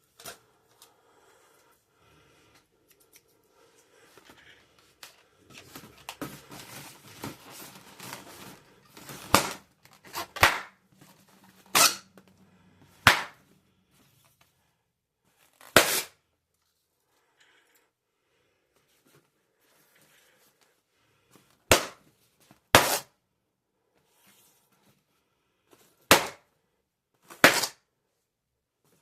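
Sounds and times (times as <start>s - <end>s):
rustling handling noise: 2.5s - 12.4s
balloons popping: 9.0s - 10.8s, 13.0s - 13.4s, 21.7s - 22.0s, 26.1s - 26.4s, 27.3s - 27.8s.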